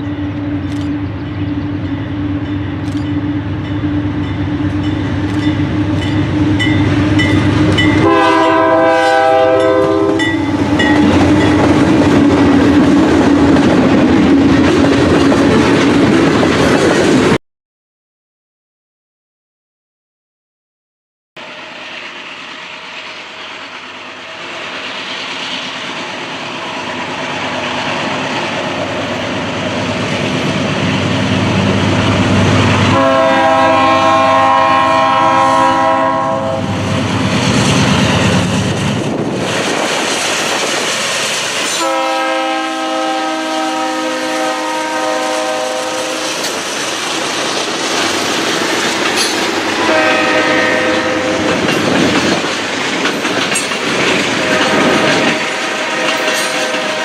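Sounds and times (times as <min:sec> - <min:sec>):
diesel locomotive engine rumble: 0:00.0 - 0:17.4, 0:21.4 - 0:57.0.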